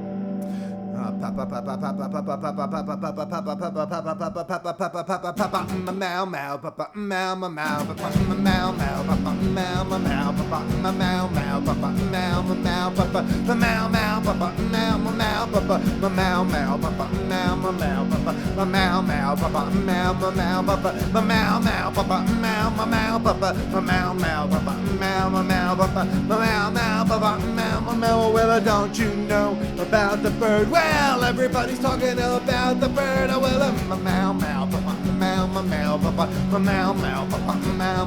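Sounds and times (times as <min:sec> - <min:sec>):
surf rock band playing: 0:08.2 - 0:38.0.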